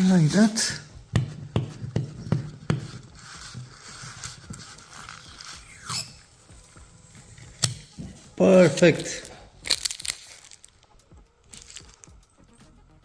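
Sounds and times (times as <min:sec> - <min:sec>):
rubbing on glass: 0:00.0 - 0:09.3.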